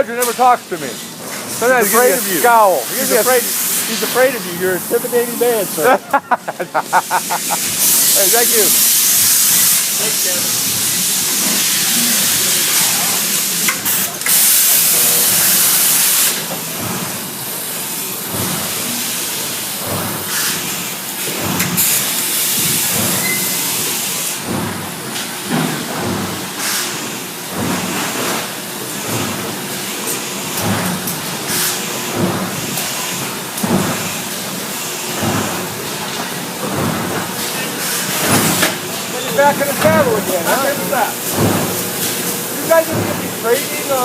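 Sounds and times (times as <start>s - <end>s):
factory machinery running: 0.0s - 44.0s
loud hissing blasts: 1.6s - 6.0s, 6.8s - 16.4s, 37.7s - 44.0s.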